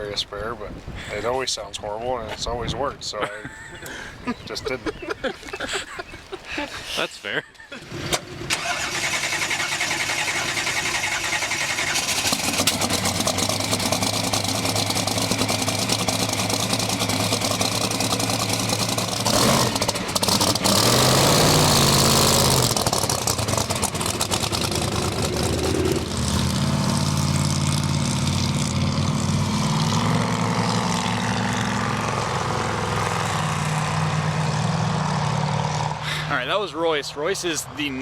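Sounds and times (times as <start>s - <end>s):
car engine running: 9.9s - 34.4s.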